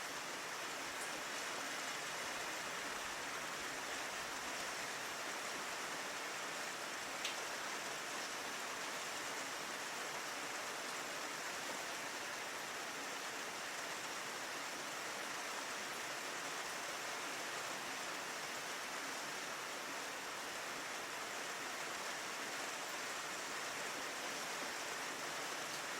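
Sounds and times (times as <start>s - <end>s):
rain on a window pane: 0.0s - 25.9s.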